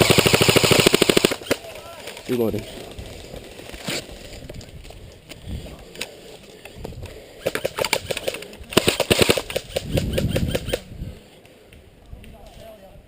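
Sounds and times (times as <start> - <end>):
airsoft rifle firing bursts: 0.0 - 1.6, 7.4 - 10.8.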